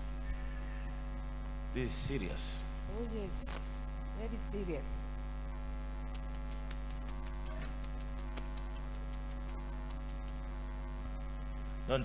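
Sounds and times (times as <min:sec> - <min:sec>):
electrical mains hum: 0:00.0 - 0:12.0
faint high ticks: 0:06.1 - 0:10.4.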